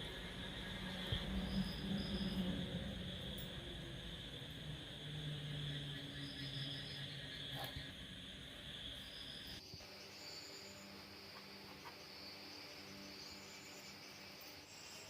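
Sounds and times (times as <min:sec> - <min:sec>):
crickets chirring: 0:00.0 - 0:15.0.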